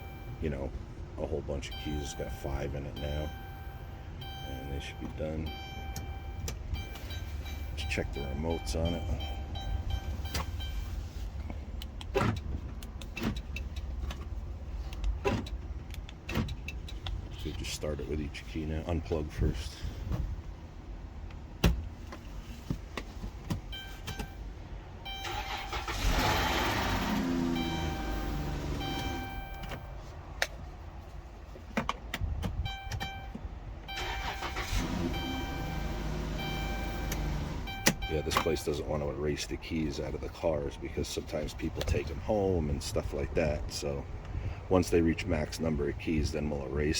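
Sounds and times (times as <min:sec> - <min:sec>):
dashboard chime: 0:01.7 - 0:11.0, 0:35.1 - 0:38.7
car door locks clunking: 0:08.2 - 0:10.8, 0:11.8 - 0:14.3, 0:15.0 - 0:17.2, 0:23.0 - 0:24.4, 0:26.8 - 0:29.9, 0:31.7 - 0:33.5, 0:34.3 - 0:38.7.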